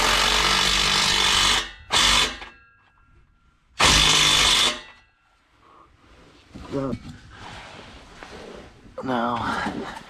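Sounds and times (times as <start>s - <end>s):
power drill bursts: 0.0s - 2.5s, 3.8s - 4.9s.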